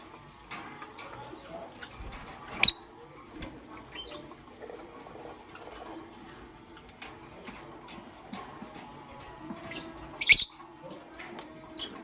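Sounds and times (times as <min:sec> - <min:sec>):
bird chirping and squeaking: 0:00.5 - 0:07.0, 0:09.1 - 0:11.0.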